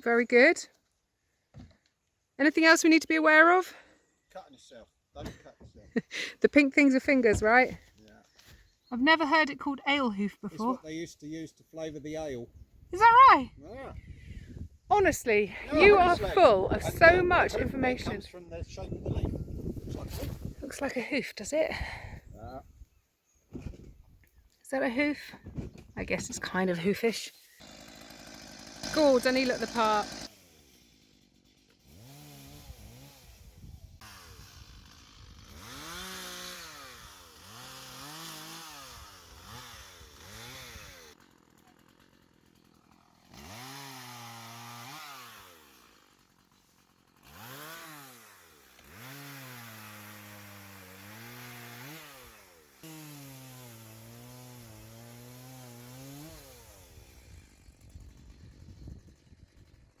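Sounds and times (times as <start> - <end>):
chainsaw engine revving: 27.6 - 60.0.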